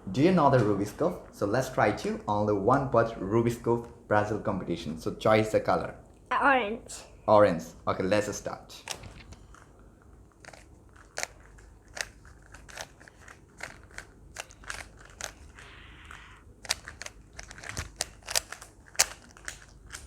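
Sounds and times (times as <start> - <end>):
puzzle cube plastic clicking: 10.4 - 20.0.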